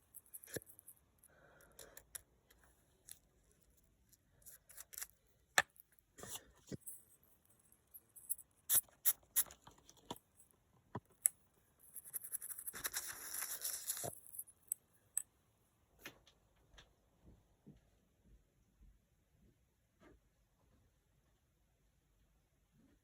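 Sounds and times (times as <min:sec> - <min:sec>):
small clicks of coin and tools: 0:00.1 - 0:03.2.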